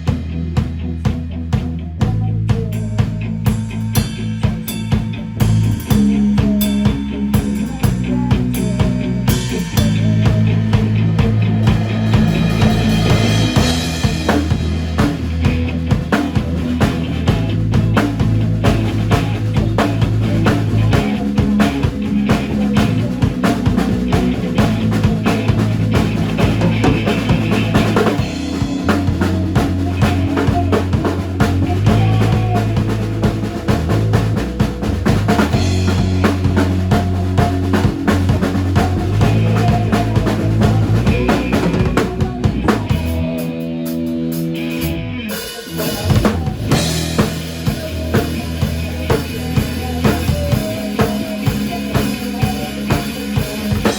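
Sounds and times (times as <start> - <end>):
bass notes: 0.0 - 53.9
drum kit beat: 0.0 - 53.9
instrumental band music: 0.0 - 53.9.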